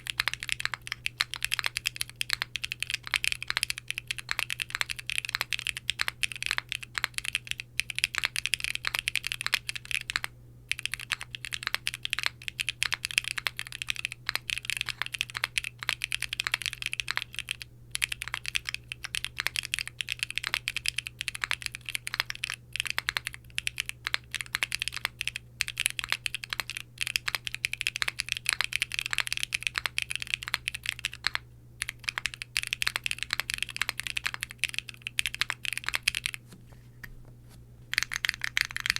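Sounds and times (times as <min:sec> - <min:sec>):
fast typing on mechanical keyboard: 0:00.0 - 0:36.4, 0:37.9 - 0:38.9.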